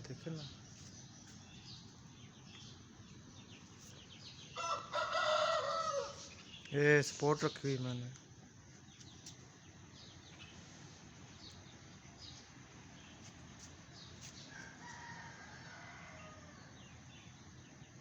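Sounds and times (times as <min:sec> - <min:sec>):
small birds chirping: 0:00.0 - 0:18.0
distant rooster crowing: 0:04.5 - 0:06.3, 0:14.4 - 0:16.9.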